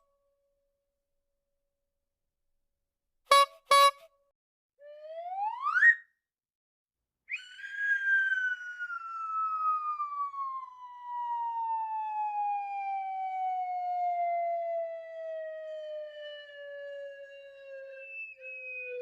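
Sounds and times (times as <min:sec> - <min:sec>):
descending whistle tone: 0:04.8 - 0:06.2, 0:07.3 - 0:19.0.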